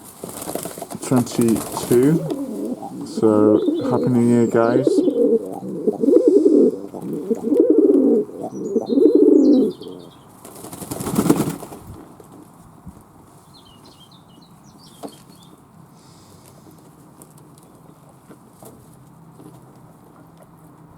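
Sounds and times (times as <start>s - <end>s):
doves cooing: 0.0s - 11.6s
wings flapping: 0.0s - 12.2s.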